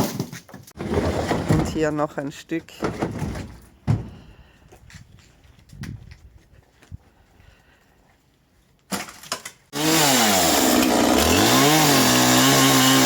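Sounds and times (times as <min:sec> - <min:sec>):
chainsaw cutting wood: 0:09.7 - 0:13.0.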